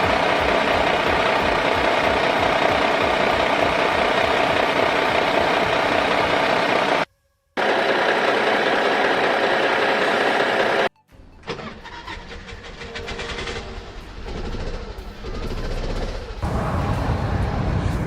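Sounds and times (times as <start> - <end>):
loud engine running: 0.0 - 10.9, 12.1 - 18.0
engine starting with rapid ticking: 11.4 - 16.4.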